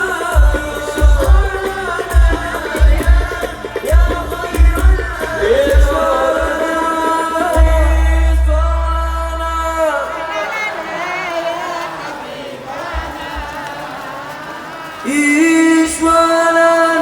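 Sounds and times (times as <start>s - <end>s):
heavy drum beats: 0.0s - 10.5s
devotional singing: 0.0s - 17.0s
deep bass note: 7.6s - 9.9s.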